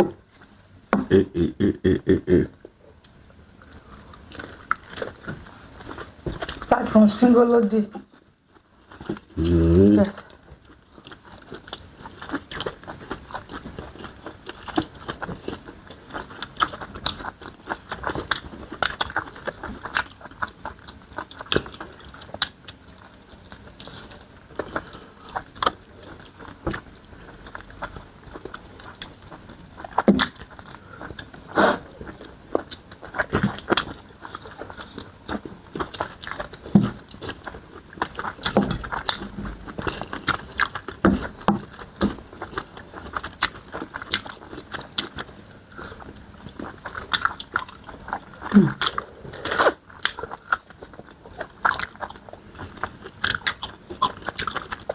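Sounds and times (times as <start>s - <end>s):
biting and chewing: 3.6s - 6.8s, 8.0s - 54.9s
crunchy mouth clicks: 11.0s - 54.9s.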